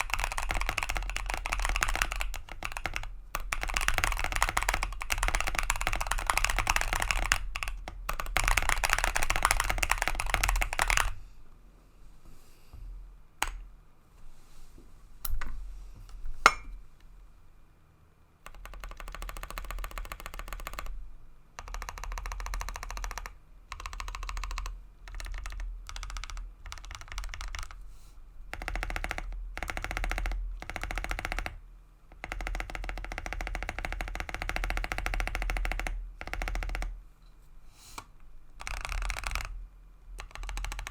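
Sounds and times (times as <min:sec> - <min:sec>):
typing on mechanical keyboard: 0:00.0 - 0:11.2, 0:18.4 - 0:21.0, 0:21.6 - 0:27.8, 0:28.5 - 0:31.6, 0:32.2 - 0:37.0, 0:38.6 - 0:39.6, 0:40.2 - 0:40.9.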